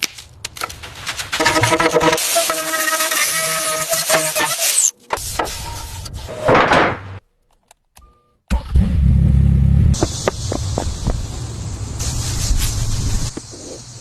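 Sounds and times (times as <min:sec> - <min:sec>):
car engine rumbling: 0:08.5 - 0:14.0.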